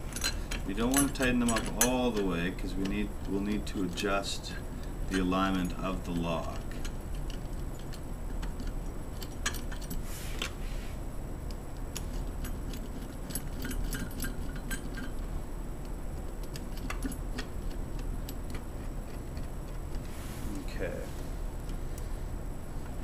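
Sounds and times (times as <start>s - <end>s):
steady low hum: 0.0s - 23.0s
metallic lock clicks and clinks: 0.1s - 3.0s, 5.1s - 10.0s, 11.9s - 15.2s, 16.4s - 18.6s.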